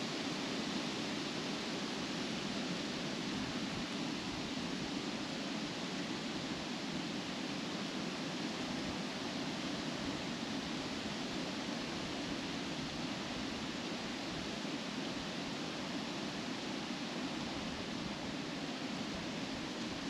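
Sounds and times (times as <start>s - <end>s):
wind through rustling trees: 0.0s - 20.0s.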